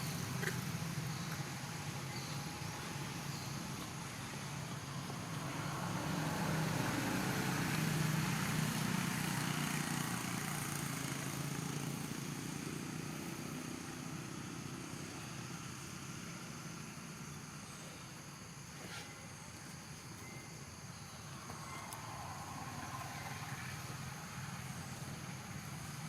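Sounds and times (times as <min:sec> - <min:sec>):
vehicle engine passing: 0:04.9 - 0:14.3, 0:21.3 - 0:26.0.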